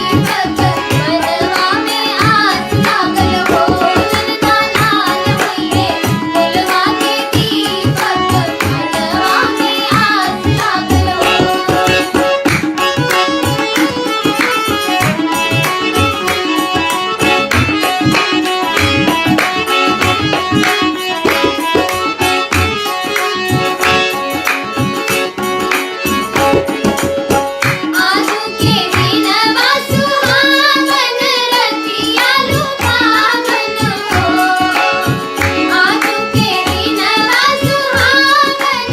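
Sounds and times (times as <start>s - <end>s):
children singing: 0.0s - 12.4s, 27.9s - 38.9s
held instrumental tones: 0.0s - 38.8s
tabla drumming: 0.0s - 38.9s.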